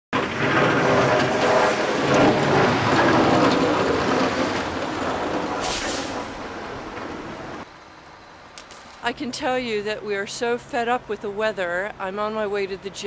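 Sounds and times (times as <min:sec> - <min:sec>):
heavy vehicle running: 0:00.1 - 0:11.4
short hiss: 0:05.6 - 0:06.3.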